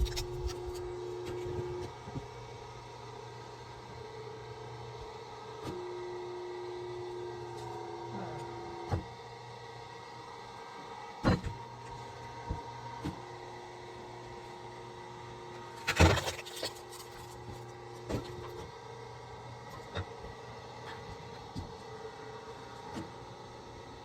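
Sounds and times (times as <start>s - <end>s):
axe splitting firewood: 0.0s - 0.9s, 15.8s - 18.4s.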